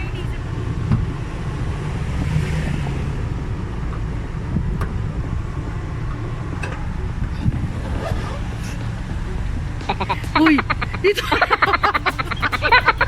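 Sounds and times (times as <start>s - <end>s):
road and engine noise in car: 0.0s - 13.0s.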